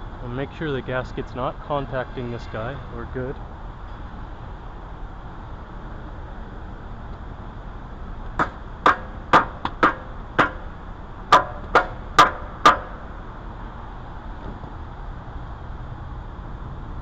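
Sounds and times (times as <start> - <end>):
sharp knocks on engine oil pan: 8.4 - 13.0.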